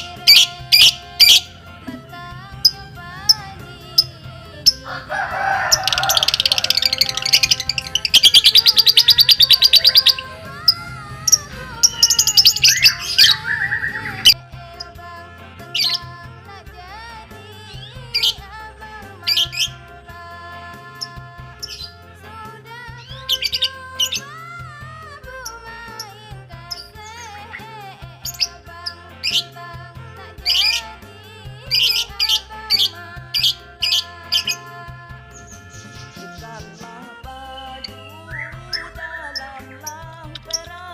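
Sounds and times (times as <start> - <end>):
baby bird chirping: 0.0 - 1.5, 5.7 - 14.4, 17.8 - 18.4, 23.1 - 24.3, 28.2 - 29.5, 30.5 - 30.9, 31.7 - 34.7, 35.3 - 40.8
background music: 0.0 - 40.9.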